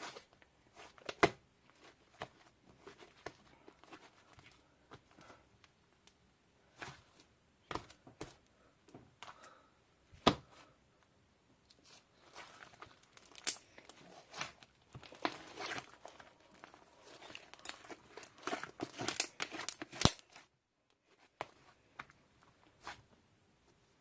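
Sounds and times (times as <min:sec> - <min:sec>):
wrapping material rustling and tearing: 0:11.8 - 0:21.8.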